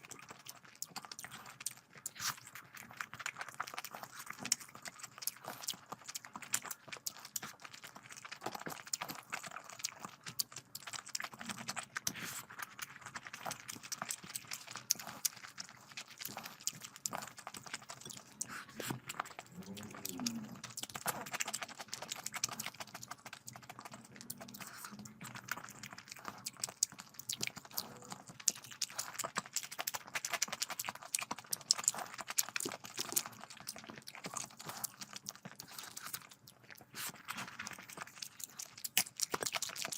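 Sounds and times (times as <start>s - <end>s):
wet chewing and lip smacking: 0.0s - 39.9s.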